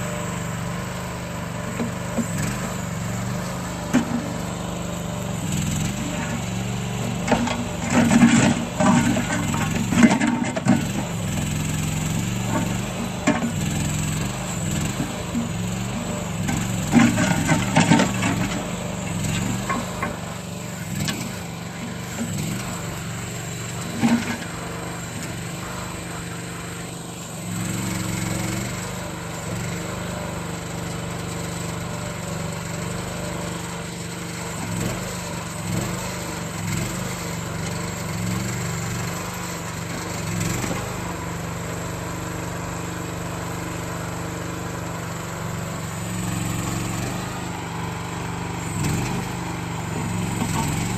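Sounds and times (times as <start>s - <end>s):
small engine running: 0.0s - 50.9s
clanks and knocks: 50.3s - 50.9s.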